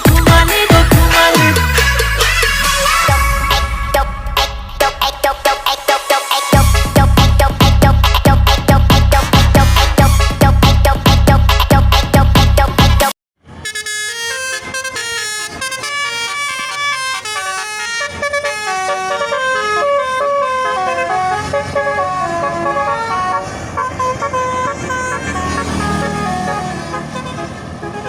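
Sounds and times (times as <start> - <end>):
bus horn playing melody: 0.0 - 4.4, 6.5 - 12.8, 13.5 - 28.0
electronic dance music: 0.0 - 13.1
bus engine running: 6.5 - 12.8, 13.5 - 28.0.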